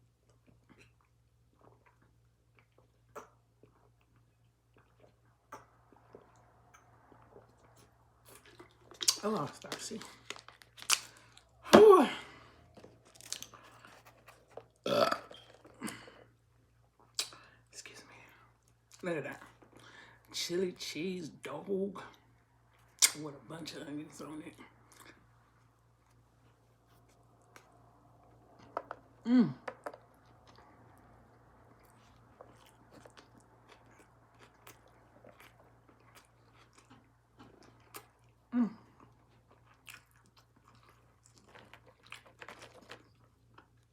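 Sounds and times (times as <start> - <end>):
wet chewing and lip-smacking: 0.0 - 11.6, 24.8 - 43.9
woman burping loudly: 14.8 - 16.2.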